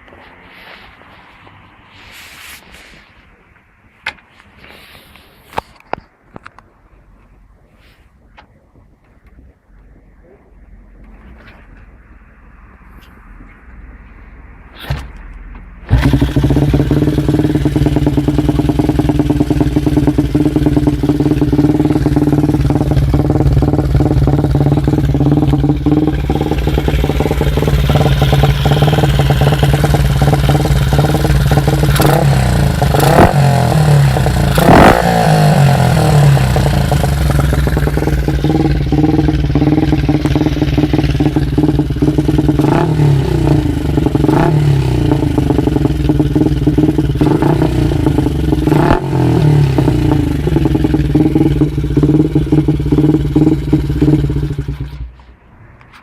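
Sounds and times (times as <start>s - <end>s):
motorcycle engine idling: 15.9s - 55.2s.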